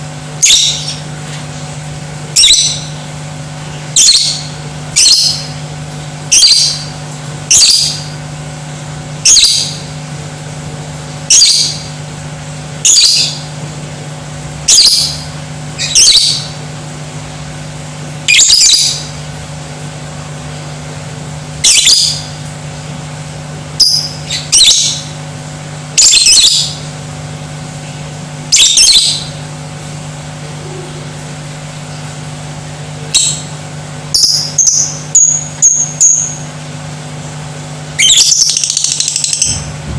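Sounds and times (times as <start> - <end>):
bird shrill squawking: 15.8 - 16.5, 28.5 - 29.3.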